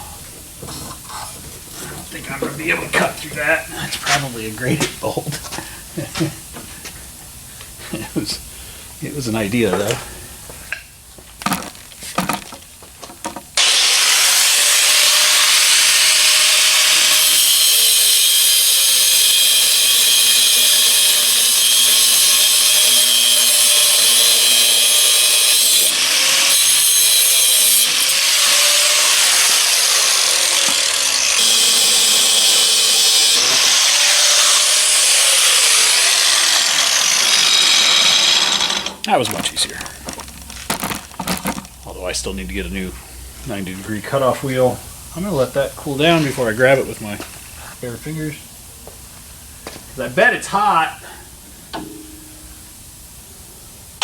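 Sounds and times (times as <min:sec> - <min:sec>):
cutoff wheel grinding whine: 0:19.0 - 0:39.1.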